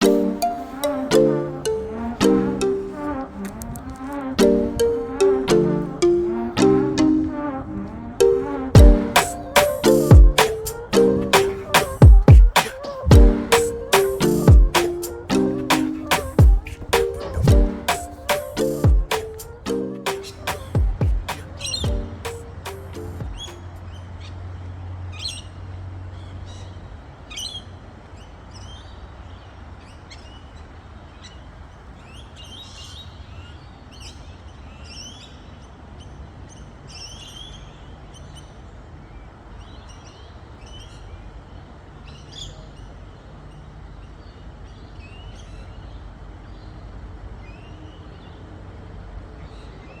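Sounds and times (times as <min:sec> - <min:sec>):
birds chirping and singing: 0:08.7 - 0:24.1.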